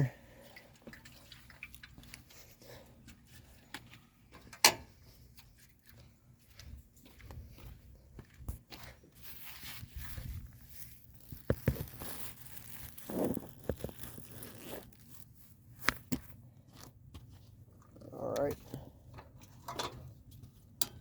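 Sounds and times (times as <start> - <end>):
footsteps: 0.4 - 15.1
rustling: 9.2 - 16.4.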